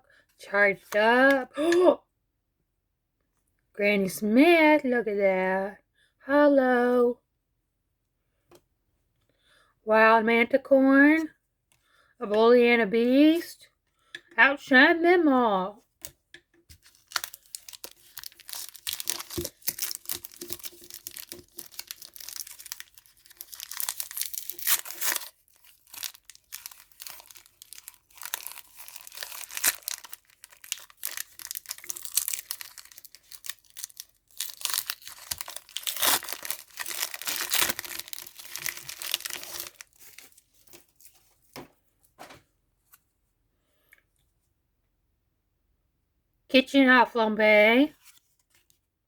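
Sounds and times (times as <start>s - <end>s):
wrapper tearing and crinkling: 16.8s - 41.2s.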